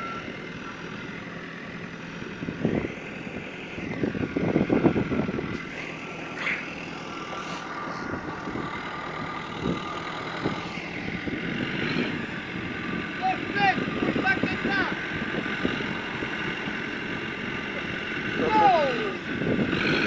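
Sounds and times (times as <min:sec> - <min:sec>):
diesel engine running: 0:00.0 - 0:20.0.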